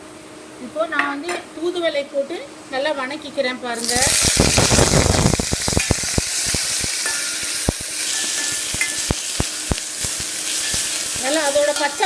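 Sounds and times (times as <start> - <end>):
leaves sizzling in hot oil: 3.8 - 12.0.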